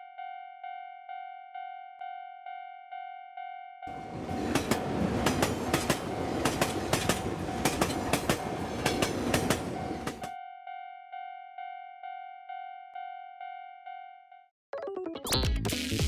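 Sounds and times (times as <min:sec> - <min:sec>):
level crossing alarm ringing: 0:03.9 - 0:10.3
train wheels clacking over rail joints: 0:03.9 - 0:10.3.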